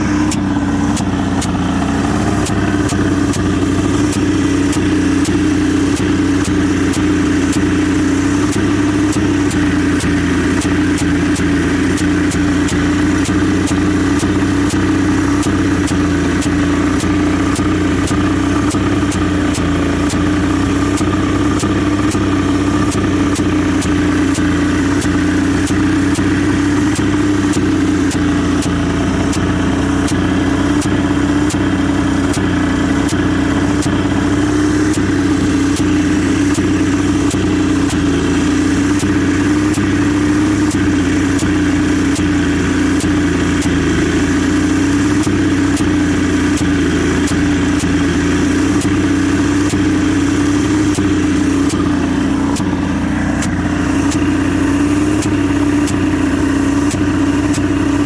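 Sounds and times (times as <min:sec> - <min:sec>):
engine hiss: 0:00.0 - 0:58.0
outboard motor idling: 0:00.0 - 0:58.0
regular sharp tick: 0:00.0 - 0:58.0.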